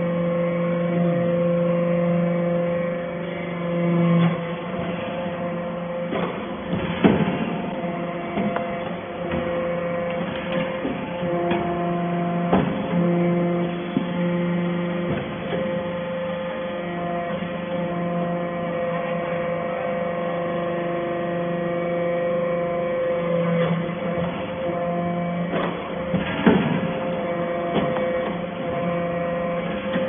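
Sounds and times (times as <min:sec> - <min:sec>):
baling press machine hum: 0:00.0 - 0:30.0
sharp knocks: 0:06.1 - 0:07.6, 0:12.4 - 0:13.0.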